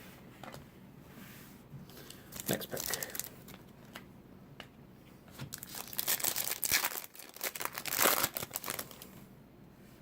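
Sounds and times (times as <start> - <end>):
wrapper tearing and crinkling: 2.4 - 3.3, 5.5 - 9.2.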